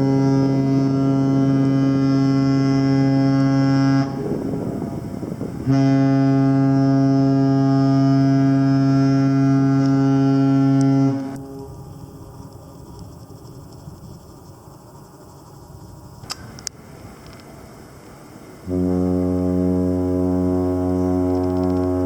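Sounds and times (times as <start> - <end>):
deep ship horn blasts: 0.0 - 12.4, 18.4 - 22.0.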